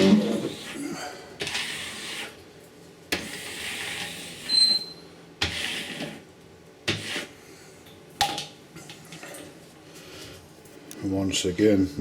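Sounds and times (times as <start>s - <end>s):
squeegee squeak: 3.4s - 6.0s.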